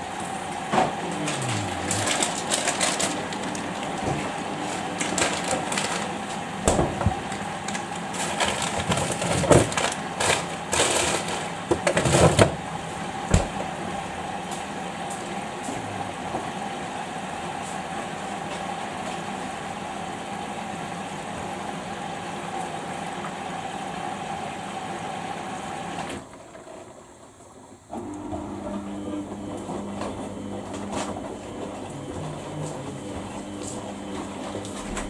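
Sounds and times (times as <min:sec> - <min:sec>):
washing machine whine: 0:00.0 - 0:35.0
washing machine knocks: 0:06.6 - 0:07.4, 0:13.2 - 0:13.8.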